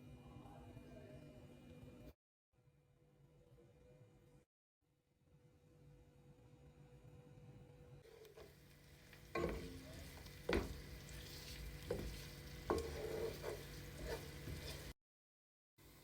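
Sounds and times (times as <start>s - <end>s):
food sizzling in a pot: 8.1s - 15.0s
spoon knocking against a pot: 9.4s - 10.9s, 11.8s - 14.9s.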